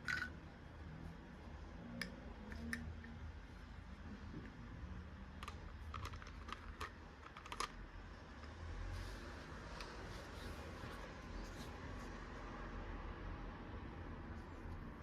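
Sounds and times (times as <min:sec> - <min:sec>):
small hard objects clicking: 0:05.4 - 0:07.8.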